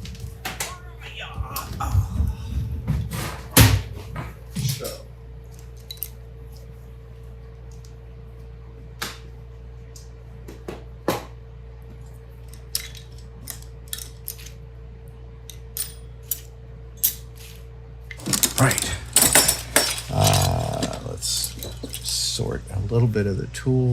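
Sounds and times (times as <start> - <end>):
steady background hum: 0.0 - 23.9
metal hand tools clinking: 18.2 - 22.4.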